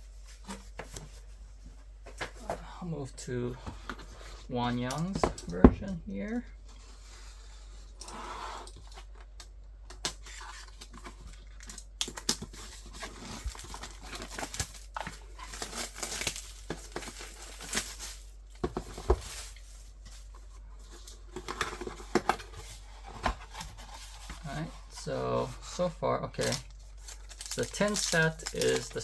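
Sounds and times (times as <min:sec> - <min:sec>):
plastic wrap crinkling and tearing: 0:10.0 - 0:20.3, 0:26.3 - 0:29.0.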